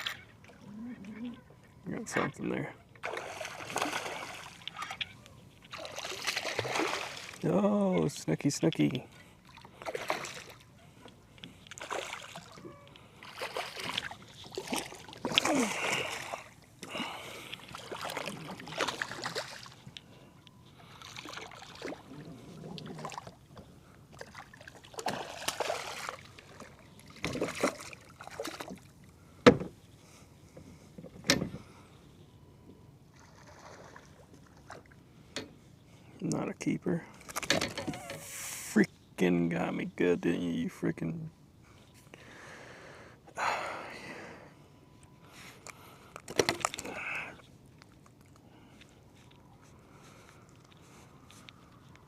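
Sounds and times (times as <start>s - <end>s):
water swishing around kayak: 2.8s - 31.2s, 33.1s - 35.8s.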